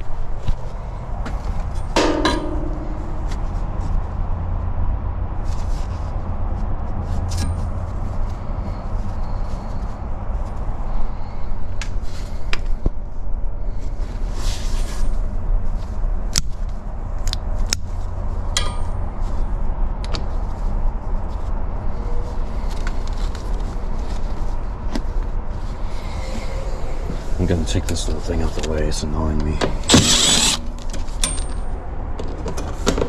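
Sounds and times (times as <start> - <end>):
low rumble: 1.8 - 4.4, 25.6 - 28.7.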